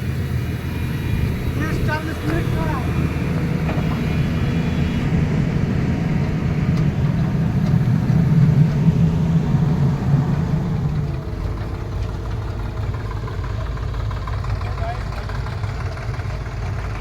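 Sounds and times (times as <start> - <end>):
heavy diesel engine running: 0.0 - 17.0.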